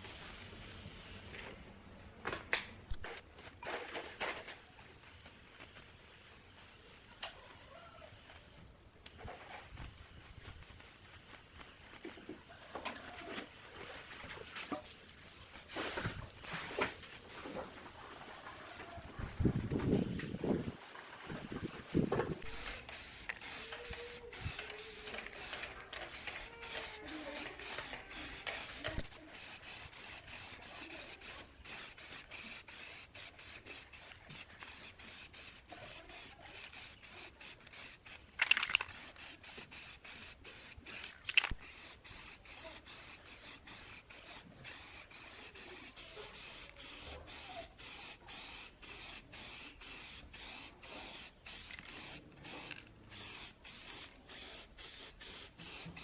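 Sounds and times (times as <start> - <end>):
spray gun hissing in bursts: 22.5 - 38.3, 38.9 - 56.0.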